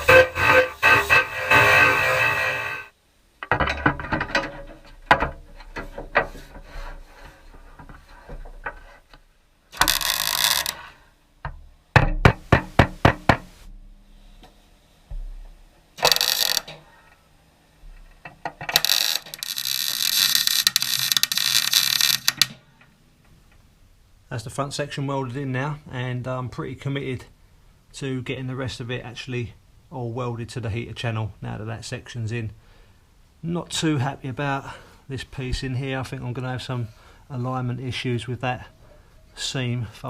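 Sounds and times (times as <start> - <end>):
tool clicks and knocks: 3.4 - 6.7, 11.4 - 13.5.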